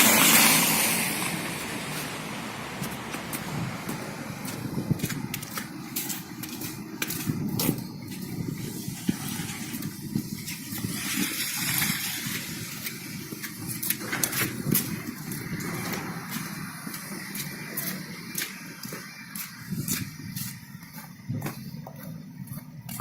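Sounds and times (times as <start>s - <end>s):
vehicle passing by: 0.0s - 5.5s
traffic rumble: 0.0s - 23.0s.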